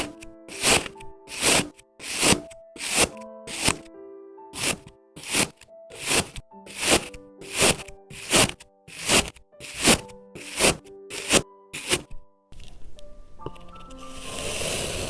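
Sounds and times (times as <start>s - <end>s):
crunching scraping strokes: 0.0s - 3.9s, 4.6s - 12.2s
soft background music: 0.0s - 15.0s.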